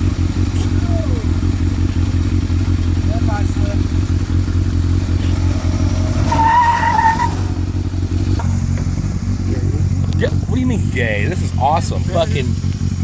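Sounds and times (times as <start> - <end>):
truck engine running hard: 0.0 - 13.0
tyre squeal: 5.2 - 7.8.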